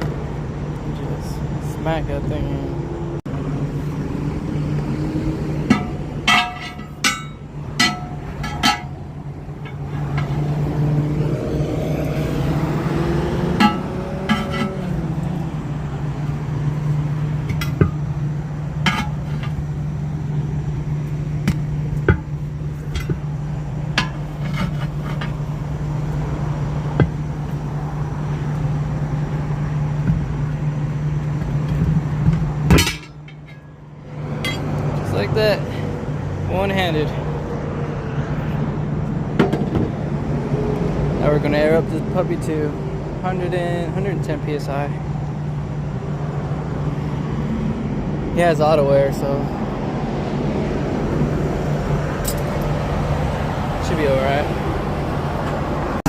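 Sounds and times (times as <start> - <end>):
low engine hum: 0.0 - 56.0
hammer striking steel wheel: 5.6 - 9.0, 13.5 - 14.8, 24.0 - 25.4, 32.7 - 33.7, 34.4 - 34.7.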